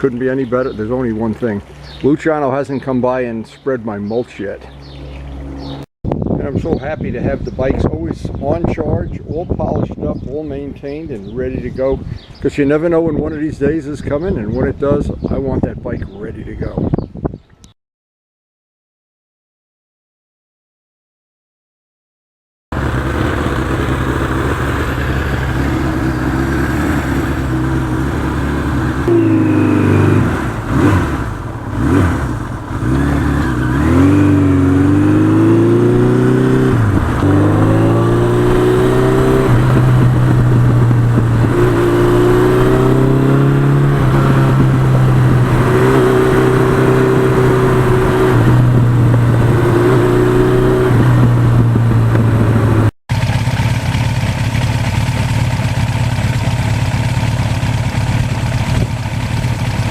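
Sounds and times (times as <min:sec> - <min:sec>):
motorcycle engine revving: 0:22.7 - 0:59.9.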